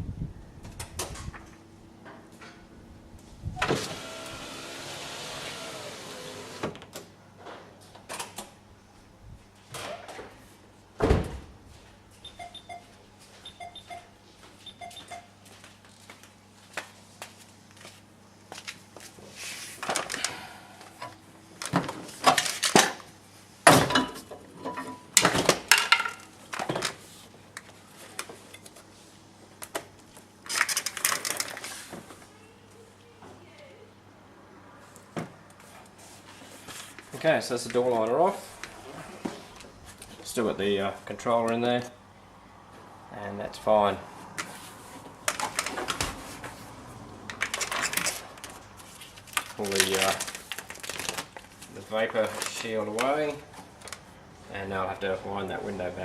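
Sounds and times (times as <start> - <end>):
power window motor: 3.6 - 6.8.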